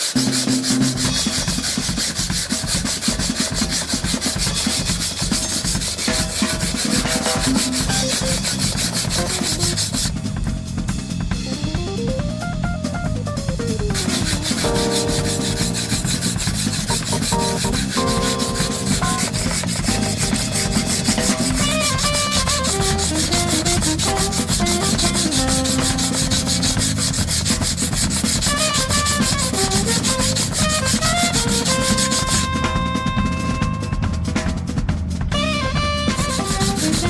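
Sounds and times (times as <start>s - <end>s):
knife grinding on whetstone: 0.0s - 10.1s, 14.0s - 32.5s, 36.2s - 37.0s
background music with drums: 0.0s - 37.0s.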